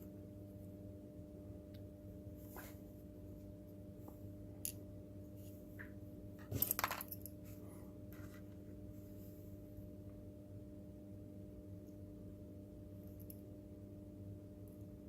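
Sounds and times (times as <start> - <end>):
low electrical hum: 0.0 - 15.0
small hard parts clattering: 6.5 - 7.3.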